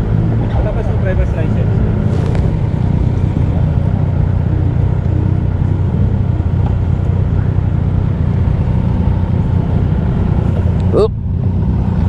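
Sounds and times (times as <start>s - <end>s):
motorcycle engine idling: 0.0s - 12.0s.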